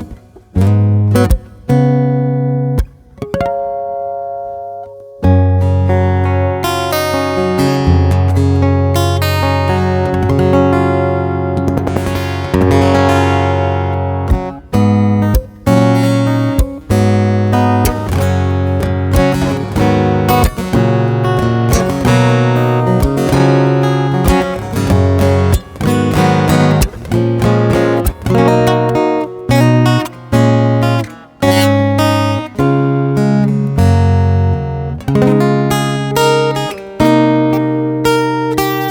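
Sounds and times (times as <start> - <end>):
acoustic guitar strumming chords: 0.0 - 38.9.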